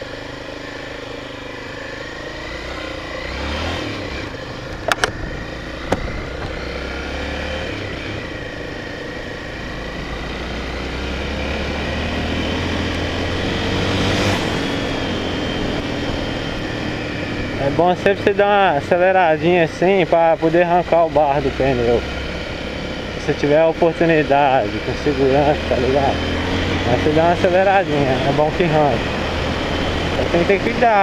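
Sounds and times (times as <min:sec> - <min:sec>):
motorcycle engine revving: 0:00.0 - 0:31.0.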